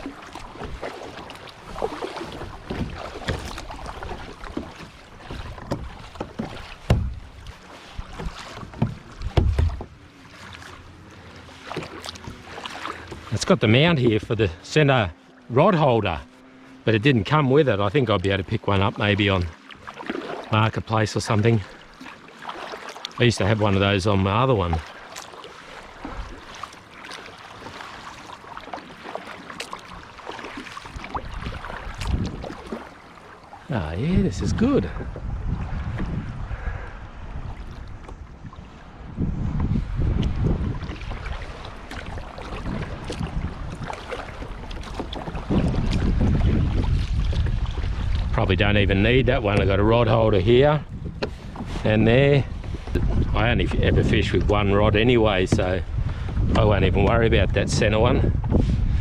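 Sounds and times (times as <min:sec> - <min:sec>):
paddle splashing water: 0:00.0 - 0:59.0
wind on microphone: 0:05.3 - 0:10.0, 0:30.8 - 0:32.8, 0:33.7 - 0:59.0
sharp knocks: 0:05.6 - 0:07.1.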